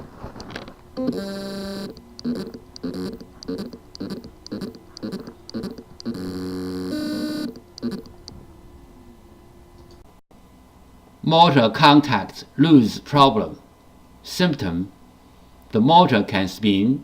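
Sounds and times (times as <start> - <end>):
hard drive buzzing chirp: 0.9 - 9.4
hard drive steady buzz: 1.0 - 9.4.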